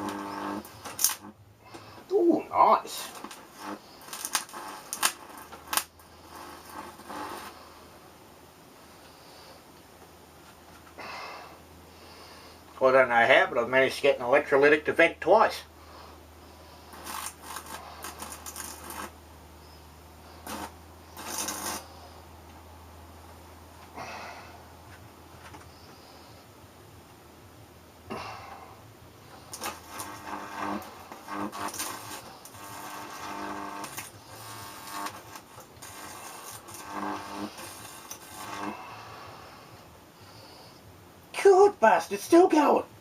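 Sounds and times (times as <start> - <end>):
electrical crackling and fizzing: 0.0 - 7.8, 16.6 - 22.0, 29.2 - 39.8
transformer buzzing: 0.0 - 7.8, 15.8 - 22.2, 29.2 - 40.7
low electrical hum: 0.0 - 43.0.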